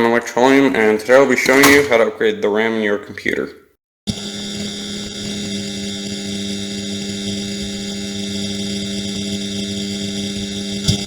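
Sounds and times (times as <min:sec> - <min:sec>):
electrical hum: 0:04.1 - 0:11.0.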